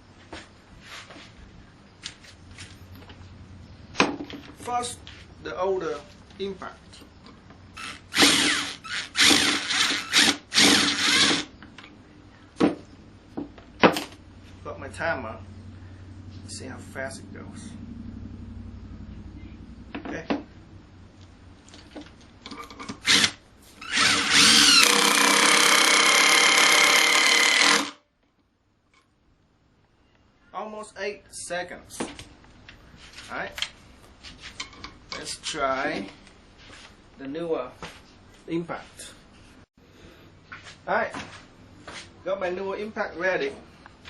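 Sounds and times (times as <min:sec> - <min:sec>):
cordless impact driver bursts: 0:07.8 - 0:11.5, 0:22.9 - 0:28.0.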